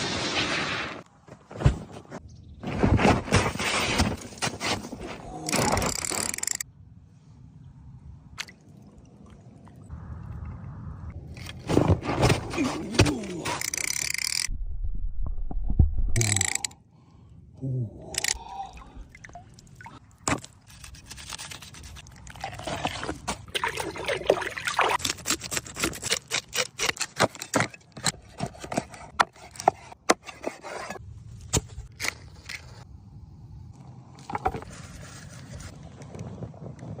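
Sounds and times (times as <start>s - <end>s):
scraping with sharp clicks: 5.5s - 6.6s.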